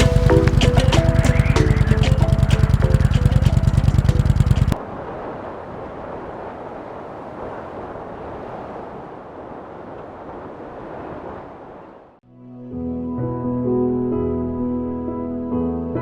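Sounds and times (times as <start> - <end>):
music with fast beat: 0.0 - 4.8
steady rushing noise: 0.0 - 4.8.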